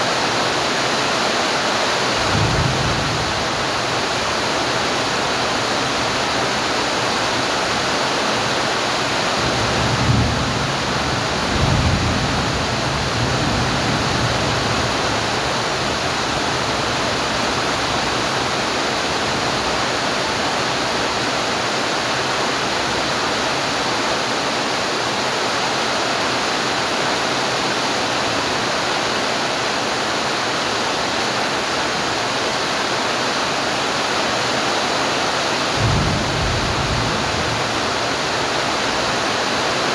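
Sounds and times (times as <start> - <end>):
heavy rain hissing: 0.0 - 39.9
low rumbles: 35.7 - 39.4.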